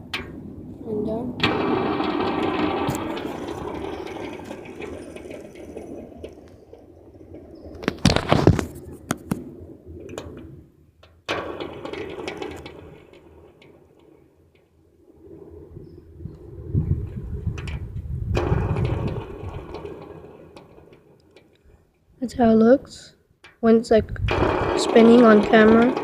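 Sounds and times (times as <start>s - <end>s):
knocks and handling clatter: 1.4s - 15.4s
fidget spinner whirring: 24.0s - 26.0s.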